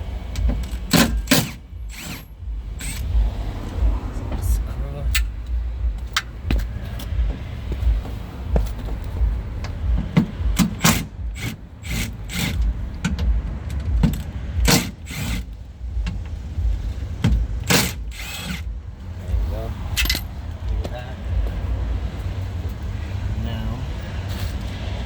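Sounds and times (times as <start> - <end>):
low rumble: 0.0 - 25.0
hand tools clicking and rattling: 0.3 - 3.1, 9.6 - 16.4, 17.2 - 18.7, 20.0 - 20.8.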